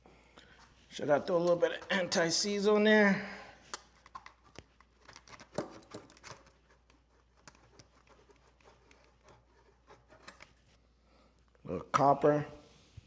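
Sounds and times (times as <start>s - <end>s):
small objects clicking and knocking: 3.7s - 8.0s.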